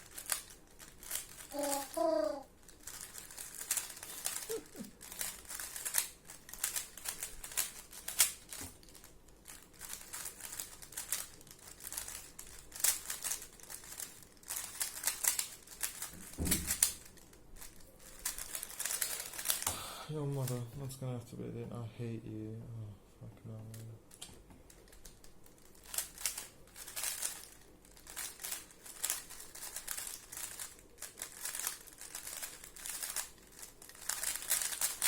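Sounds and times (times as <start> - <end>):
puzzle cube clicking turns: 0.0 - 19.7, 23.7 - 35.0
low thump: 16.2 - 16.8.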